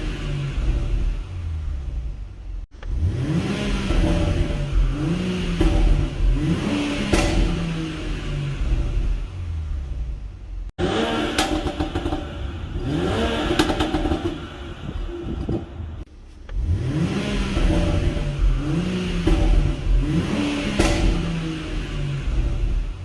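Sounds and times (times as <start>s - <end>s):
car engine revving: 0.0s - 23.0s
exhaust pops and crackles: 11.3s - 12.5s, 13.4s - 16.6s, 20.7s - 21.4s.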